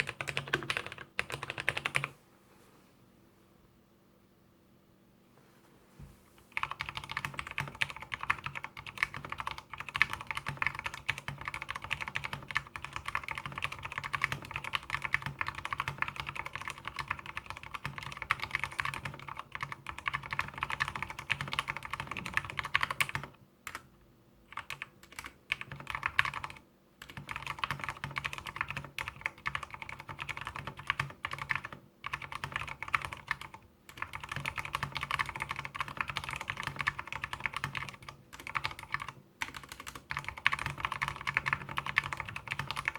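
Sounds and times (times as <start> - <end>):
fast mechanical keyboard typing: 0.0 - 2.1, 6.5 - 23.9, 24.5 - 42.9.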